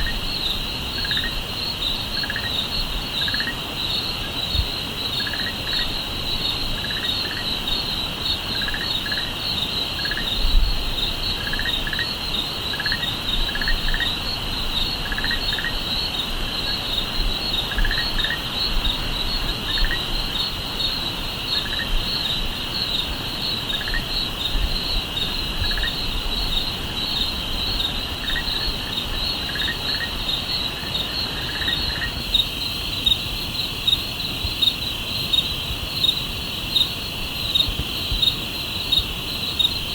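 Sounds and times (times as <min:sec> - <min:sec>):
crickets trilling: 0:00.0 - 0:39.9.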